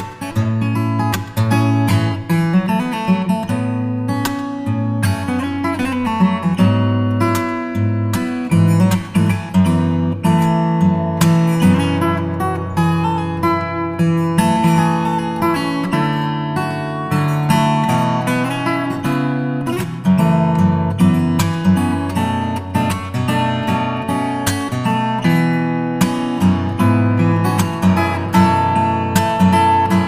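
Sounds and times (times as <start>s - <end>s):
acoustic guitar strummed and picked: 0.0s - 30.0s.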